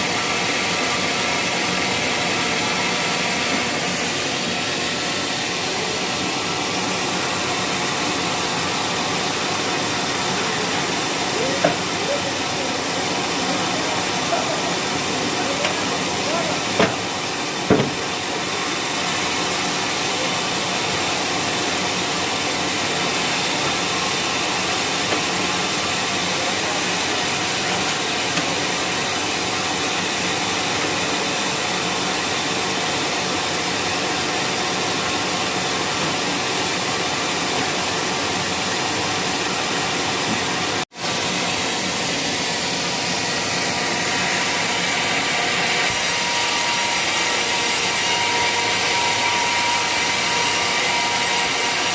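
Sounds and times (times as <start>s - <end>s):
sawmill running: 0.0s - 51.9s
knock: 17.7s - 18.0s.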